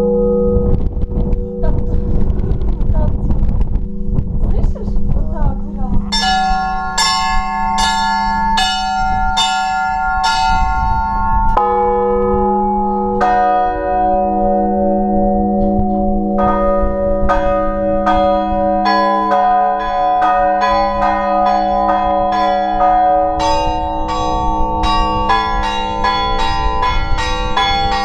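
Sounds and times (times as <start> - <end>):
deeper bells ringing: 0.0 - 28.0
low bell hum: 0.0 - 28.0.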